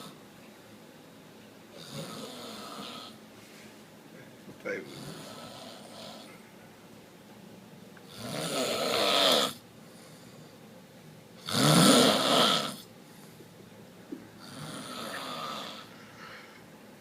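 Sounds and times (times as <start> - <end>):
man snoring: 1.7 - 3.2, 4.8 - 6.3, 8.1 - 9.6, 11.4 - 12.9, 14.4 - 15.9.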